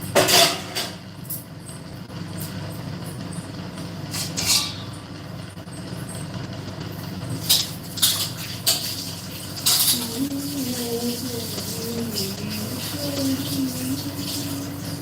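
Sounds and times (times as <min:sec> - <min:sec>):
steady low hum: 0:00.0 - 0:15.0
utensils rasping in a pan: 0:04.1 - 0:05.2, 0:06.9 - 0:15.0.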